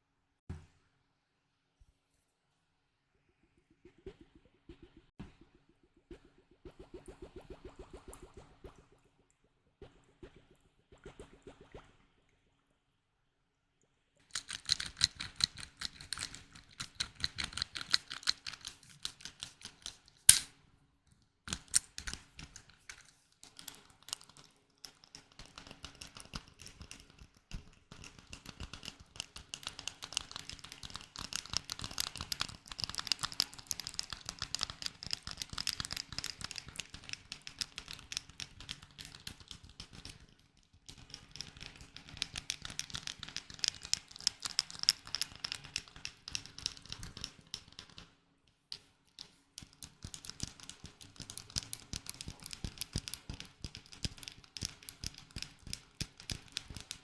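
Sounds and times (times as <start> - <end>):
loud sharp click: 20.3 - 20.5.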